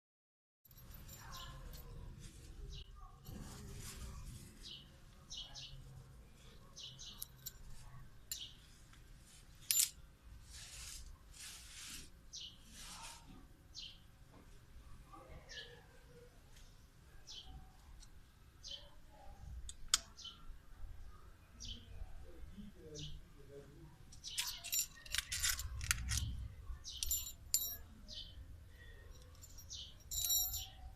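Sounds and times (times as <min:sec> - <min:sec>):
soft rustles: 0:00.8 - 0:05.0, 0:10.4 - 0:13.5
small birds chirping: 0:01.0 - 0:02.0, 0:04.4 - 0:08.8, 0:12.3 - 0:14.1, 0:15.1 - 0:23.5, 0:24.1 - 0:30.9
cat toy bell jingling: 0:24.4 - 0:27.8, 0:29.2 - 0:30.9
sharp metallic clink: 0:26.9 - 0:28.3, 0:29.2 - 0:30.9.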